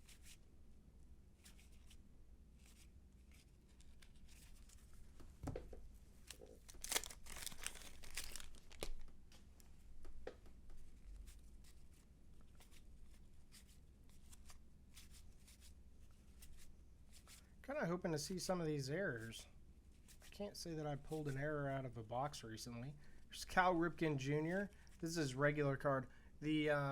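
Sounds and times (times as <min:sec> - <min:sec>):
wrapper tearing and crinkling: 0:06.2 - 0:09.1.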